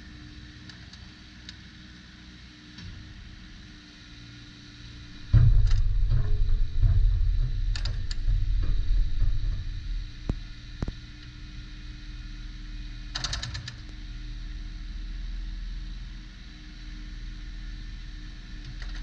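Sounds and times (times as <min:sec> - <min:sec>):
clanks and knocks from machine: 0:04.9 - 0:11.7
sharp knocks: 0:05.0 - 0:11.7
rattle of metal clicks: 0:05.1 - 0:11.3.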